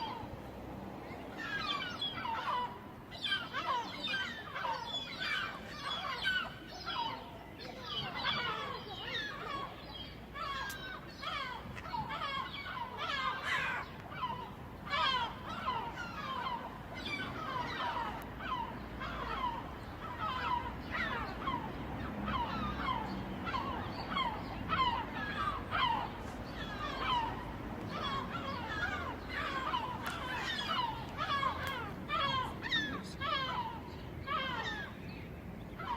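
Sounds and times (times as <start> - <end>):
seagulls calling: 0.0 - 0.4, 1.1 - 35.9.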